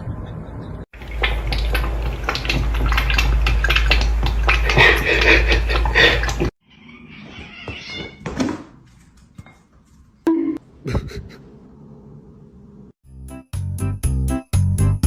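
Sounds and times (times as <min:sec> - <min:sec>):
cat noises: 0:06.6 - 0:08.2.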